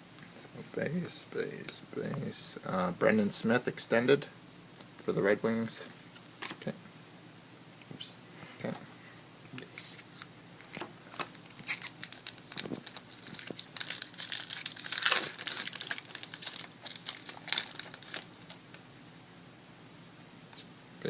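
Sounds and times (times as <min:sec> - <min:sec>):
foil wrapper crinkling: 0:11.0 - 0:18.8.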